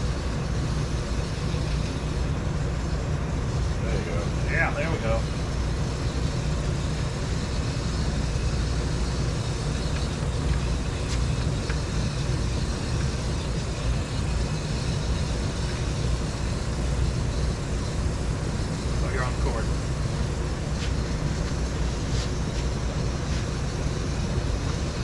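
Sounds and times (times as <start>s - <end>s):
rushing noise with low rumble: 0.0s - 25.0s.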